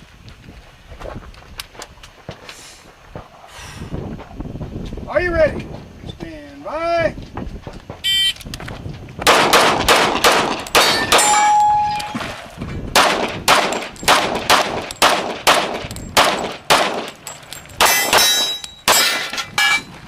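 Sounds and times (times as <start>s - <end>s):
handgun shots: 9.2s - 12.2s, 13.0s - 17.2s
steel targets ringing: 10.5s - 12.4s, 16.1s - 20.0s.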